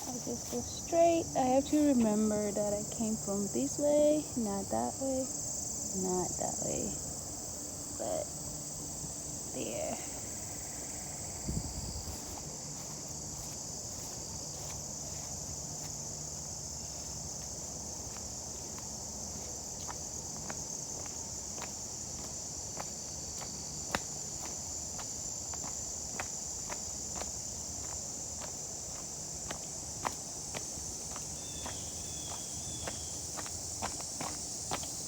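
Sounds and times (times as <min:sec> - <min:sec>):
footsteps: 0:00.0 - 0:02.5, 0:11.5 - 0:35.0
high-pitched insect chorus: 0:00.0 - 0:35.0.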